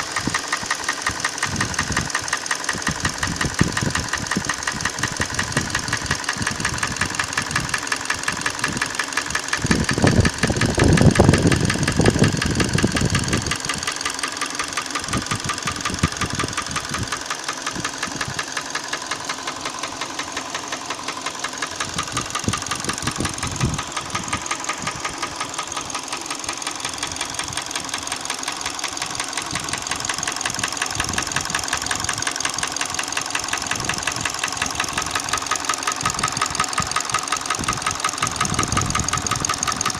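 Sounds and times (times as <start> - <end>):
car engine idling with knock: 0.0 - 39.9.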